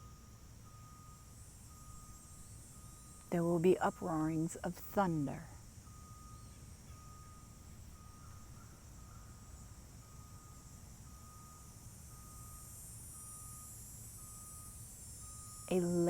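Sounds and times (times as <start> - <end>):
insect chorus hiss: 0.0 - 16.0.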